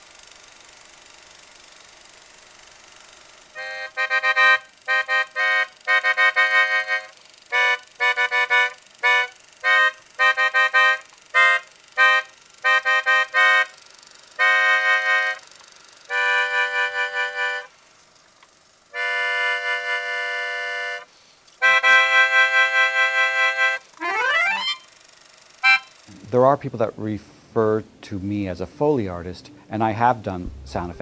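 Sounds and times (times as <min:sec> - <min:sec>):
accordion-like chords: 0:03.6 - 0:13.8, 0:14.4 - 0:15.4, 0:16.1 - 0:17.8, 0:18.9 - 0:24.9, 0:25.6 - 0:31.0.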